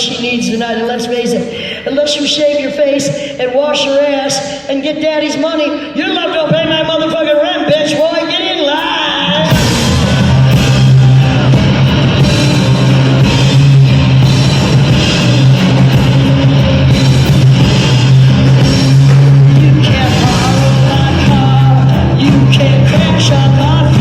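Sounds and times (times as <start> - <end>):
heavy bass line: 9.2 - 24.0
live rock band playing: 9.2 - 24.0.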